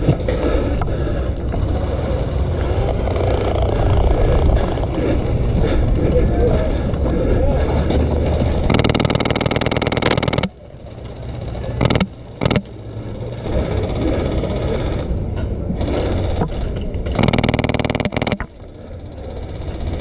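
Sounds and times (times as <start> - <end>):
airsoft machine gun bursts: 8.7 - 10.6, 11.7 - 12.7, 15.8 - 18.4.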